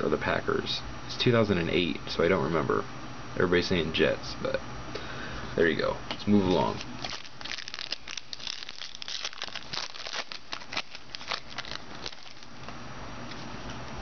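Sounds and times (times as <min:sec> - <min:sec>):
wrapper crinkling and tearing: 0:06.6 - 0:12.8.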